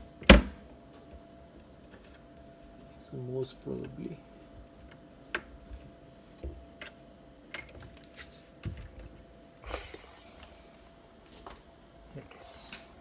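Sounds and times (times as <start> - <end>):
cupboard door clicks and taps: 0.2 - 0.6.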